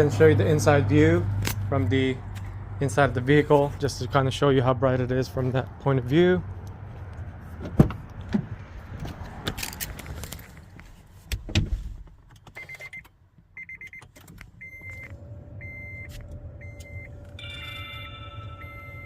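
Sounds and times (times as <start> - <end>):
car door shutting: 7.6 - 9.6, 11.3 - 13.0
high electronic warning chime: 15.6 - 19.0.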